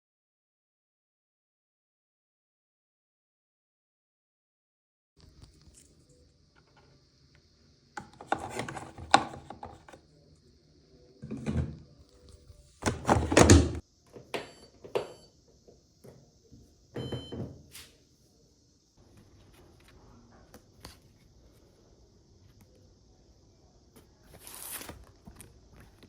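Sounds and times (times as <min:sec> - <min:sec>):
handling noise: 0:08.0 - 0:10.0.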